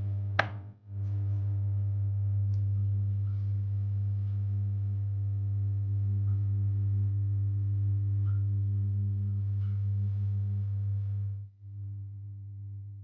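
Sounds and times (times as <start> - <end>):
steady low hum: 0.0 - 12.5.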